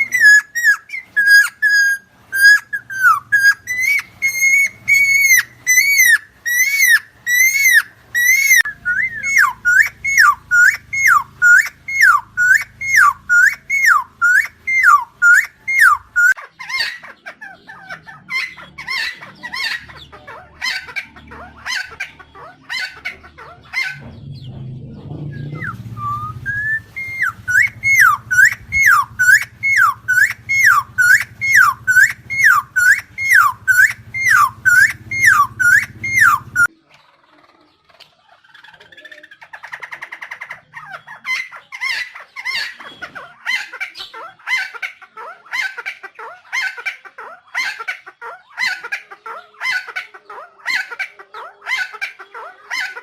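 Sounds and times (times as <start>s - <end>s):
bird calling repeated notes: 0.0s - 20.0s, 25.3s - 36.7s
brief low noise: 23.9s - 27.3s.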